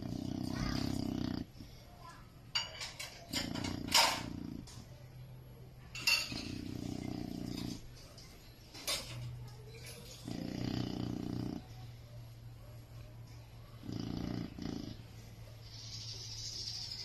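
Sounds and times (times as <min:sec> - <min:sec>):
dog snoring: 0:00.0 - 0:01.7, 0:03.0 - 0:04.9, 0:06.1 - 0:07.9, 0:09.8 - 0:11.9, 0:13.8 - 0:15.2.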